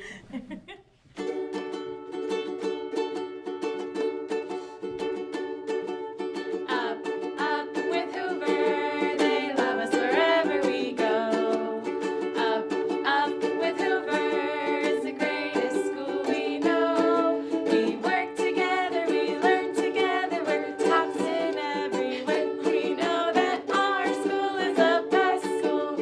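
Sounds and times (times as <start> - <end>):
person singing: 6.5 - 26.0.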